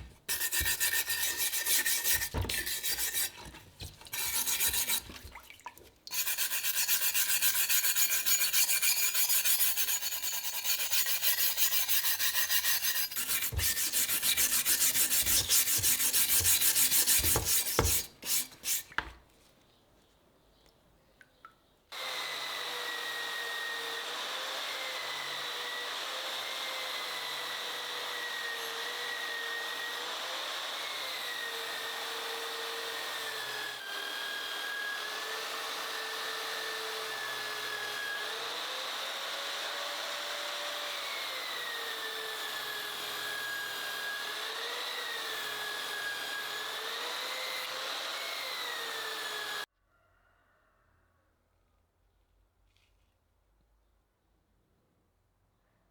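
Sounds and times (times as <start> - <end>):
small power tool motor whirring: 6.2 - 18.8, 21.9 - 49.7.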